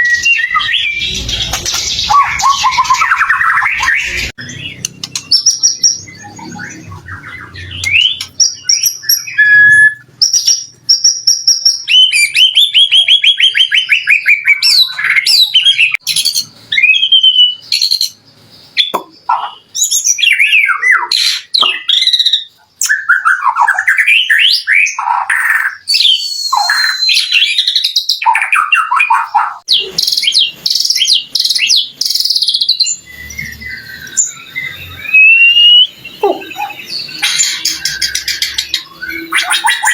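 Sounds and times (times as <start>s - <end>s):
songbird singing whistles and trills: 0.0s - 39.9s.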